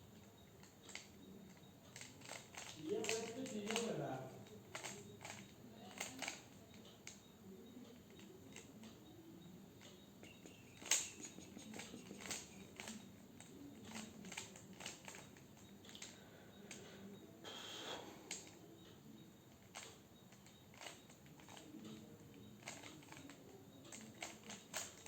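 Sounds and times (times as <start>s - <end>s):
puzzle cube plastic clicks: 1.9s - 7.2s, 10.2s - 15.3s, 22.6s - 25.0s.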